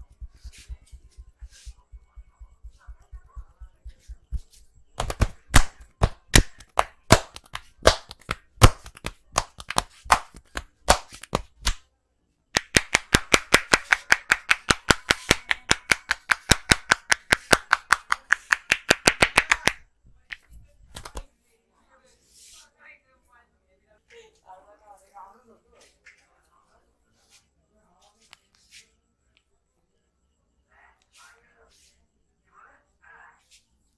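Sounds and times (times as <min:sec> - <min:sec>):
hands slapping on head: 0:00.0 - 0:11.8, 0:12.6 - 0:21.3.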